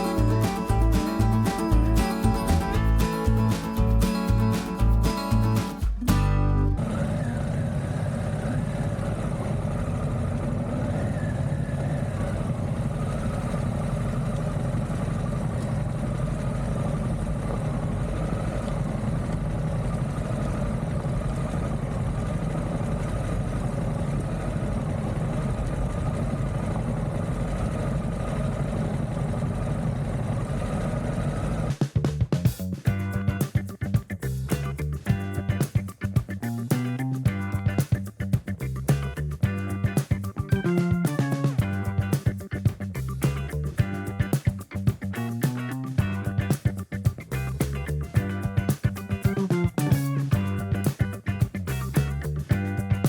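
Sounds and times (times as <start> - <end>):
motorcycle engine cruising: 0.0 - 14.6, 31.7 - 53.0
road and wind noise: 0.0 - 53.0.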